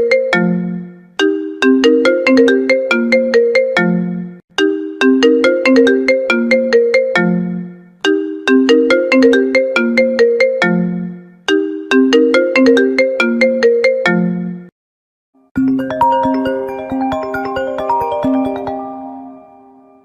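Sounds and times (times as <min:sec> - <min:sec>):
phone ringtone melody: 0:01.3 - 0:04.0, 0:04.6 - 0:07.4, 0:08.2 - 0:10.9, 0:11.5 - 0:14.2, 0:15.6 - 0:20.0.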